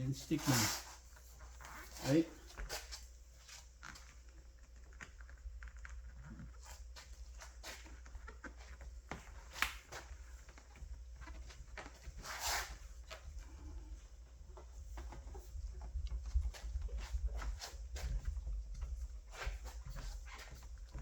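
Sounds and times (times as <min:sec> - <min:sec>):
short rustle: 0:00.0 - 0:04.4.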